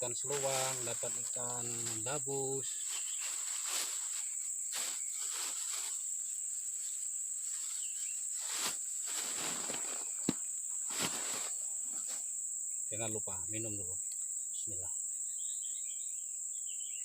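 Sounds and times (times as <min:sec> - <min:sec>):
insects chirring: 0:00.0 - 0:17.0
soft rustles: 0:00.3 - 0:12.3.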